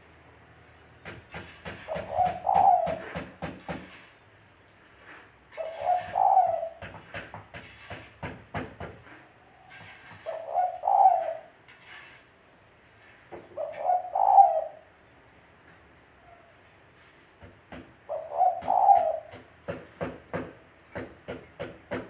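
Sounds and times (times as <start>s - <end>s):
dove cooing: 1.9s - 3.2s, 5.6s - 6.9s, 10.2s - 11.5s, 13.4s - 14.9s, 18.1s - 19.4s.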